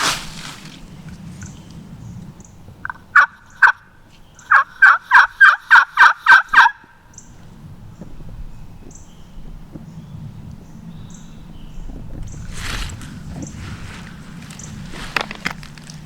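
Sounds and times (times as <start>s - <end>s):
turkey yelps: 2.9s - 3.8s, 4.4s - 6.9s.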